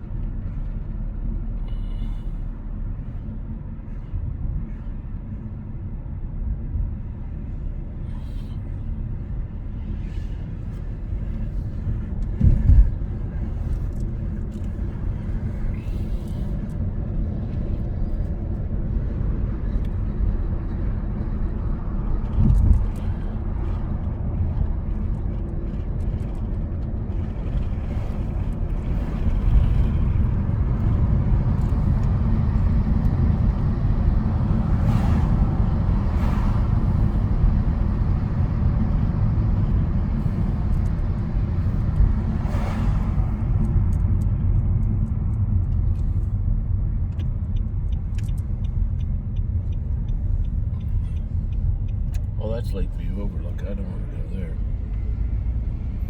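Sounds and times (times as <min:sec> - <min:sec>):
car road noise rumble: 0:00.0 - 0:56.0
thumps in car: 0:12.2 - 0:14.0.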